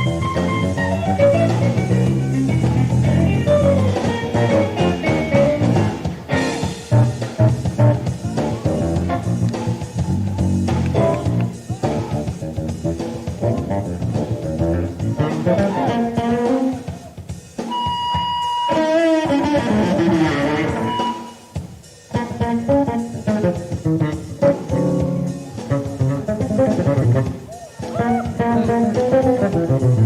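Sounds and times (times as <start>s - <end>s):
electric bass plucked notes: 0.0s - 16.9s, 17.7s - 21.4s, 22.1s - 30.0s
high ringing bass tones: 17.6s - 19.1s, 20.3s - 21.5s.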